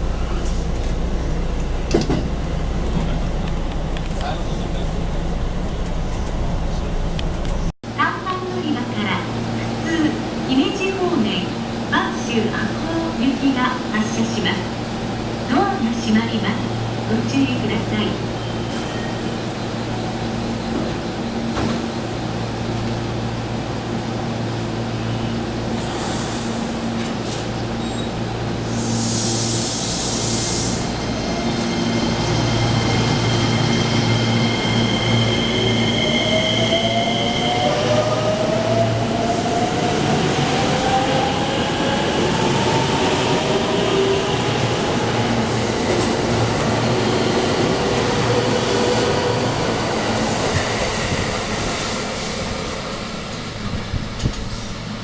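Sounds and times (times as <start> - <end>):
train electrical hum: 0.0 - 55.0
compressed air hisses: 25.8 - 26.8, 28.7 - 30.9.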